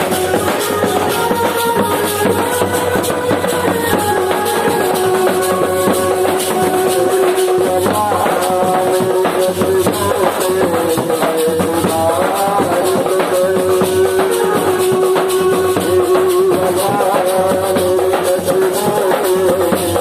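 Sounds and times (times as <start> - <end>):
sustained melody line: 0.0 - 9.4
fast shaker rhythm: 0.0 - 20.0.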